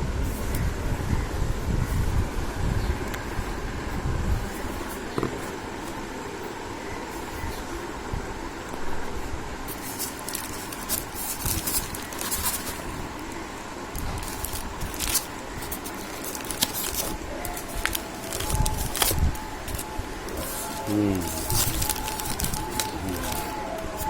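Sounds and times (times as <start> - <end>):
packing crackling and rustling: 9.6 - 24.0.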